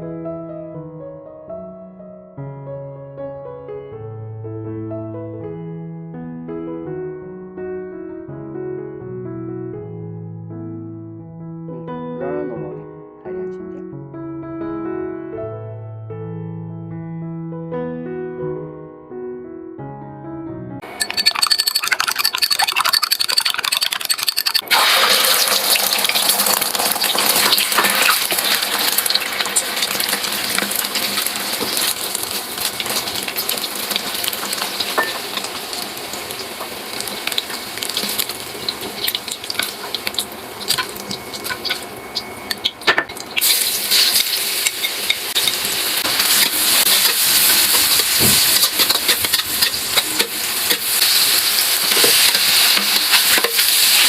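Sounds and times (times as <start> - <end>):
spatula scraping a pan: 20.8 - 32.0, 43.4 - 54.0
food sizzling in a pan: 20.8 - 54.0.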